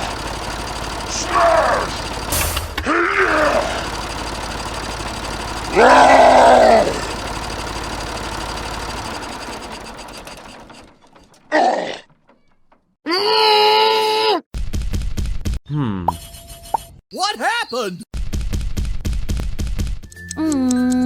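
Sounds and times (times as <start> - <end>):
small electric motor running: 0.0 - 10.8
loud voice-like groan: 5.8 - 7.0, 11.5 - 12.0, 13.1 - 14.4.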